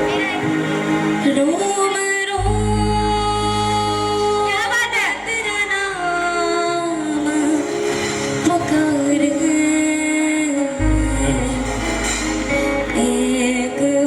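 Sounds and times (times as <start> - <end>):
low sustained bass note: 2.4 - 4.5, 10.8 - 13.6.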